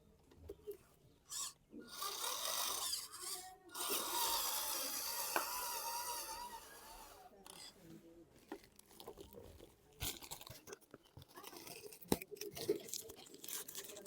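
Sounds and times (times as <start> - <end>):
rasping scraping noise: 1.3 - 7.9.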